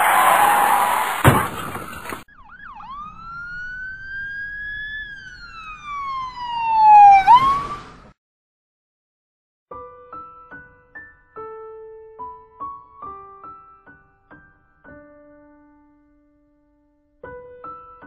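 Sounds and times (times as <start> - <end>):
sharp knock: 1.2 - 2.2
siren-like whistling tone: 1.9 - 8.0.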